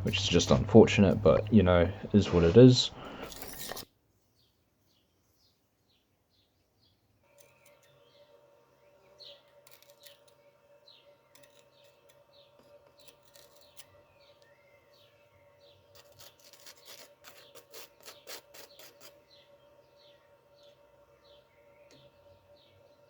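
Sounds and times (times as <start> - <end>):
faint steady hum: 0.0 - 3.8
small birds chirping: 4.3 - 23.0
scratchy filing strokes: 11.3 - 14.0, 15.9 - 19.6.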